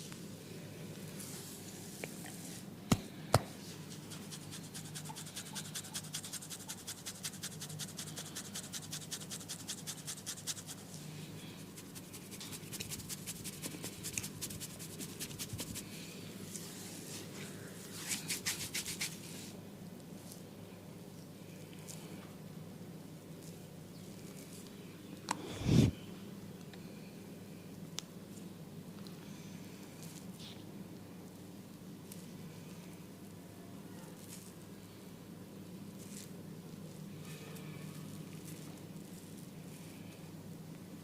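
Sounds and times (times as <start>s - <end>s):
hands rubbing oiled scalp: 3.7s - 11.0s, 11.6s - 15.9s, 17.9s - 19.5s.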